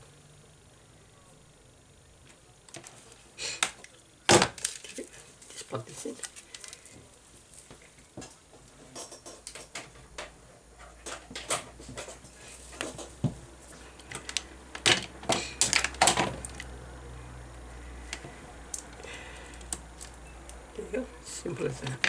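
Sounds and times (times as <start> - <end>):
faint low hum: 0.0 - 22.0
small plastic parts clicking: 3.6 - 7.0, 14.0 - 16.7, 18.1 - 20.6.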